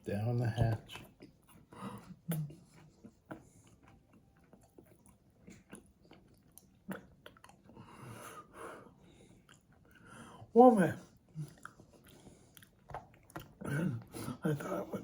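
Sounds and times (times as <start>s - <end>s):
person chewing food: 0.5s - 10.5s, 11.1s - 14.4s
breaths: 7.7s - 10.5s.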